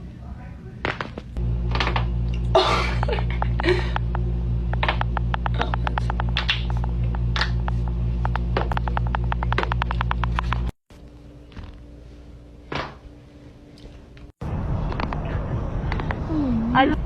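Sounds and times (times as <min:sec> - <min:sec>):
low electrical hum: 0:00.0 - 0:17.0.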